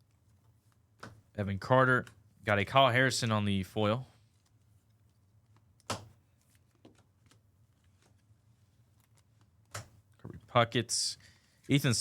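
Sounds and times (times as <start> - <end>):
trading card tap: 5.8 - 6.1.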